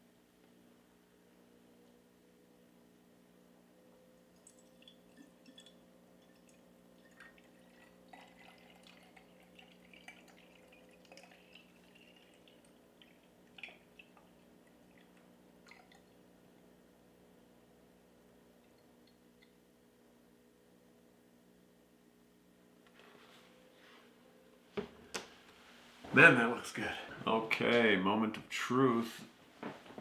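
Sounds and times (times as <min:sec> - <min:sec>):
liquid trickling and dripping: 0:04.2 - 0:16.3, 0:18.6 - 0:19.6.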